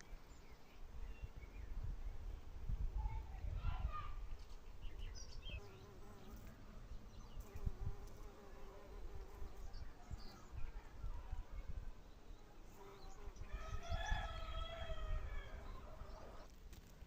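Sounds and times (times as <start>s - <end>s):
flying insect buzzing: 5.6s - 9.6s.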